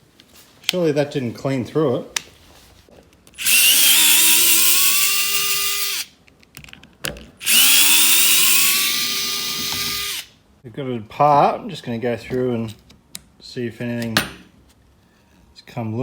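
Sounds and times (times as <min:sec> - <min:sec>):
oscillating multi-tool whirring: 0:03.4 - 0:06.1, 0:07.4 - 0:10.3.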